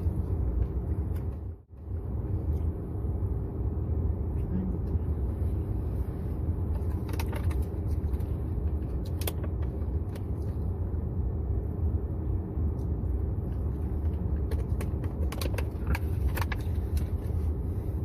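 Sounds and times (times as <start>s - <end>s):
car rumble inside cabin: 0.0s - 18.0s.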